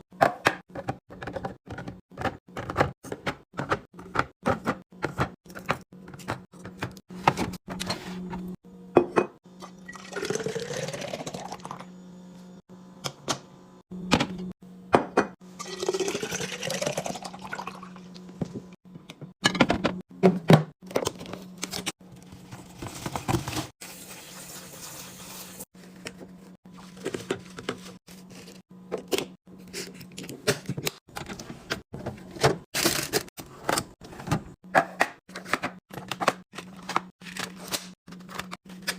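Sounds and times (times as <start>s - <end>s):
liquid pouring into container: 9.8s - 11.8s, 15.6s - 18.0s.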